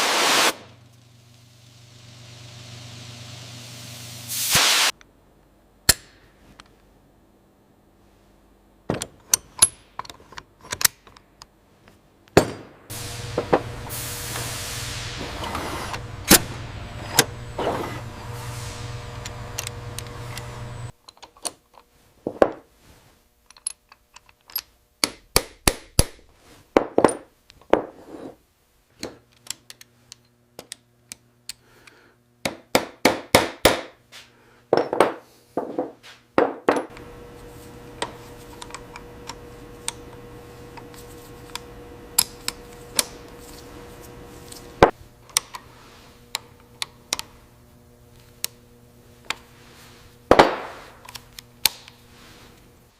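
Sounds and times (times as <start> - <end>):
steady machine hum: 0.6 - 4.5, 12.9 - 21.0, 36.8 - 52.9
metal tools clicking and knocking: 23.5 - 25.3.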